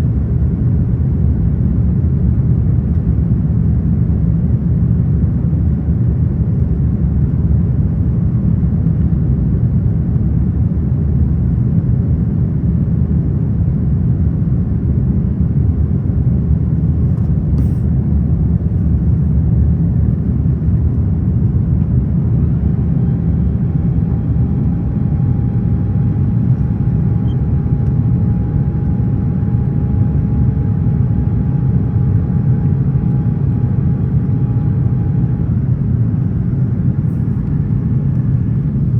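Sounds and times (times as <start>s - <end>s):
airliner cabin rumble: 0.0s - 38.9s
faint steady whine: 15.4s - 38.9s.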